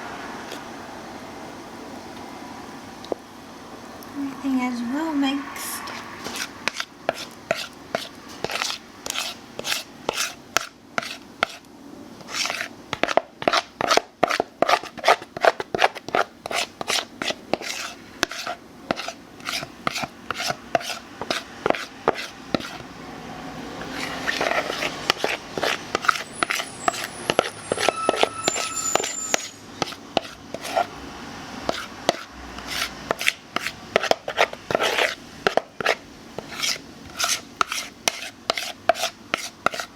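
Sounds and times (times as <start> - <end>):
spatula scraping and knocking bowl: 5.8 - 11.6, 12.2 - 22.9, 23.8 - 30.9, 31.7 - 39.9.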